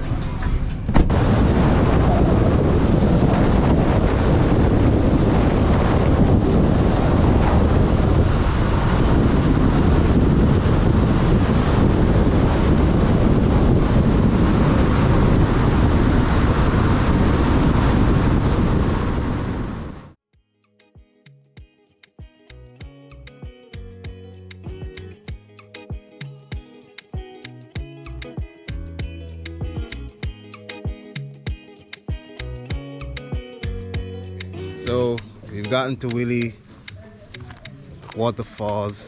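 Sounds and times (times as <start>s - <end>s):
wind buffeting microphone: 0.0s - 20.2s.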